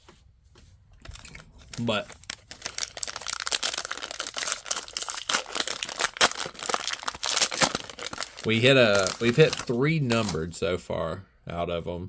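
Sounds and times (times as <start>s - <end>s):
card pack wrapper crinkling: 1.0s - 10.5s.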